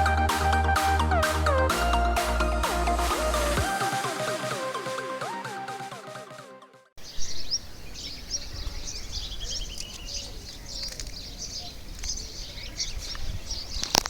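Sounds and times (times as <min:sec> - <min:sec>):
small birds chirping and twittering: 0:07.0 - 0:14.0.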